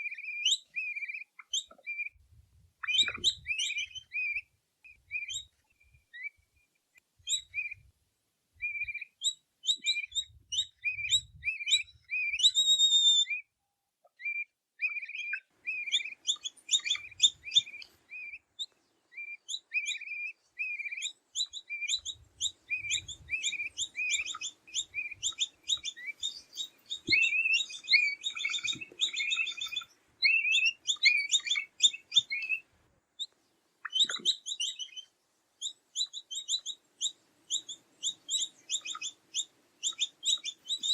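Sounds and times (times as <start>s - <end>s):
capybara chirping: 14.2s - 18.4s, 19.2s - 32.6s, 33.9s - 35.0s, 35.6s - 40.9s.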